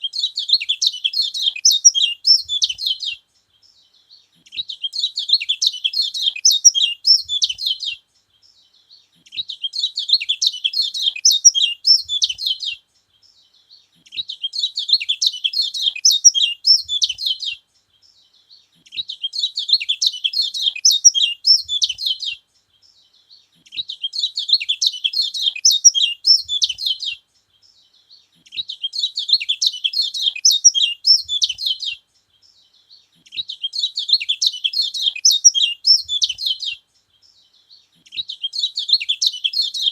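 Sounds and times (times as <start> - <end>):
bird twittering song: 0.0 - 39.9.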